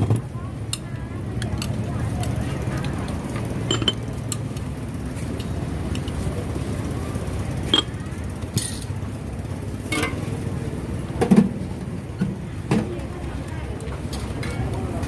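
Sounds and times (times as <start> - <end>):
low traffic rumble: 0.0 - 15.0
glasses and utensils clinking: 3.6 - 4.1, 7.6 - 8.0.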